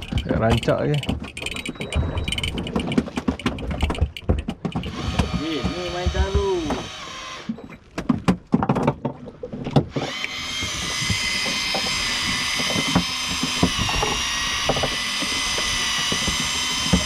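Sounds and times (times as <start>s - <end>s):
knocks and clicks: 0.0s - 6.9s
fishing reel motor whine: 4.9s - 7.6s, 10.0s - 17.0s.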